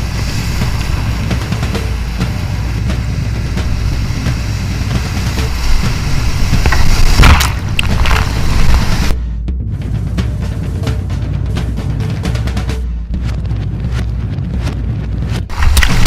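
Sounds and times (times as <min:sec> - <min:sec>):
water splash: 0:00.0 - 0:09.2
whitewater rapids rushing: 0:00.0 - 0:09.2
deep rumble on microphone: 0:00.0 - 0:16.0.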